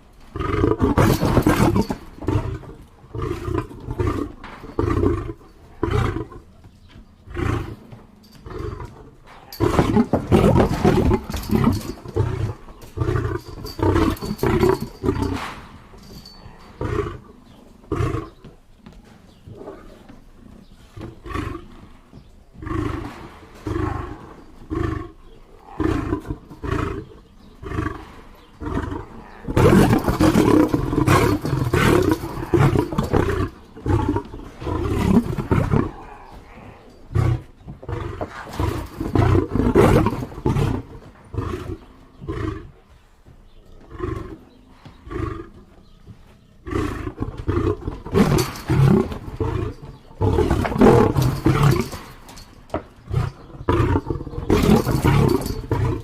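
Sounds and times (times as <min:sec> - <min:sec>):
lion roaring: 0:22.6 - 0:42.7, 0:46.6 - 0:51.9, 0:53.1 - 0:56.0.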